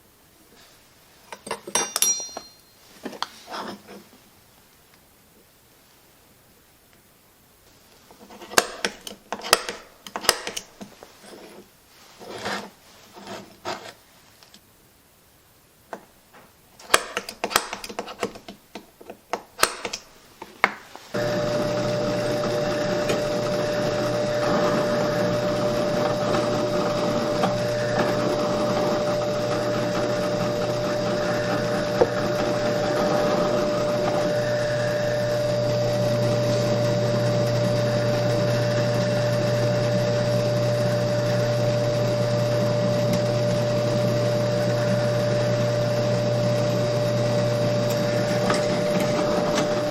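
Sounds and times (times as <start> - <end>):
sharp metallic clanks and taps: 1.3 - 2.8
steady motor whine: 21.2 - 49.9.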